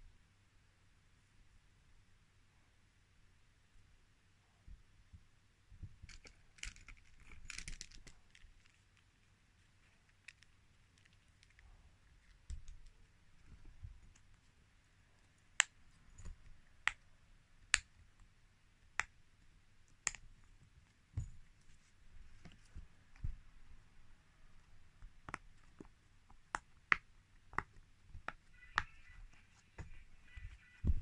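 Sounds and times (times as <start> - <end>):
soft thumps of toys handled: 21.1 - 23.5, 27.6 - 31.0.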